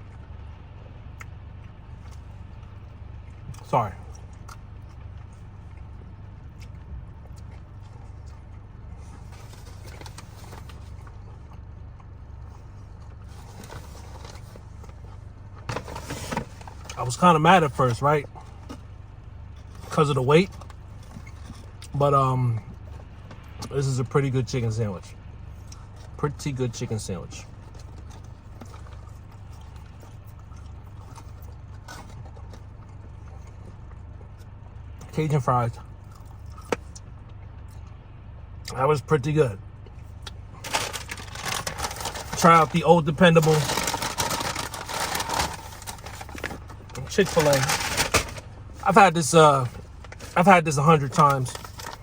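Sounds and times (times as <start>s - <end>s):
car engine idling: 0.0s - 52.0s
clicks and rustles from eating: 27.5s - 35.1s.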